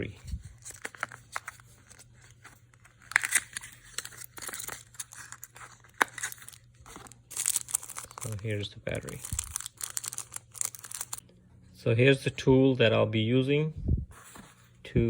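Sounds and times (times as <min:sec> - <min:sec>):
plastic packaging crinkling: 0:00.3 - 0:11.2.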